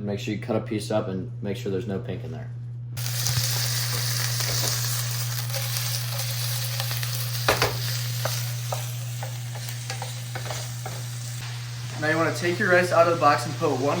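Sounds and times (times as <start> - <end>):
steady low hum: 0.0 - 14.0
chicken sizzling in a pan: 3.0 - 14.0.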